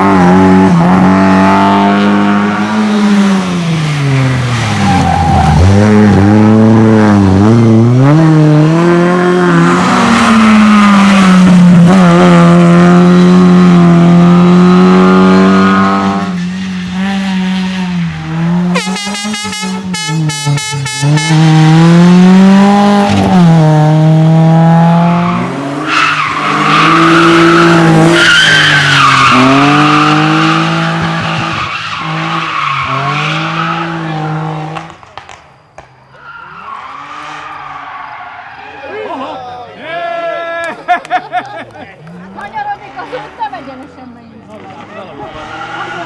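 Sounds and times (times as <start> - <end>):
rally car engine revving: 0.0 - 38.8, 42.0 - 46.0
tyres squealing: 3.4 - 6.4, 24.1 - 30.6, 36.0 - 40.8
exhaust crackling pops: 34.8 - 36.0.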